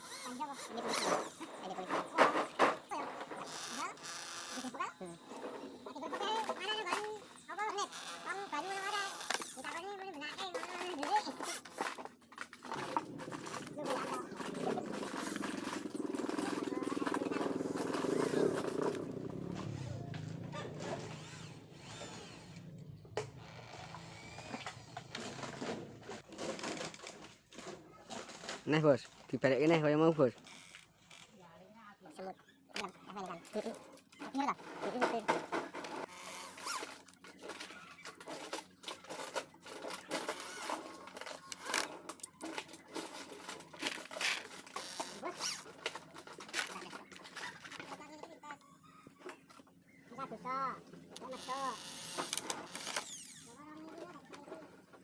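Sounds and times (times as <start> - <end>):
wooden pieces knocking and scraping: 0.8 - 4.0, 5.2 - 28.8, 32.8 - 48.4
power tool motor humming: 3.3 - 5.9, 7.0 - 9.7, 12.7 - 26.2, 36.1 - 36.9, 51.2 - 53.6.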